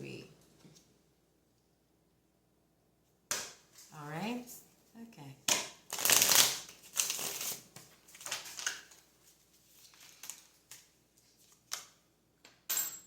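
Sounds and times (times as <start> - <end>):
cards rustling and flicking: 5.6 - 12.0.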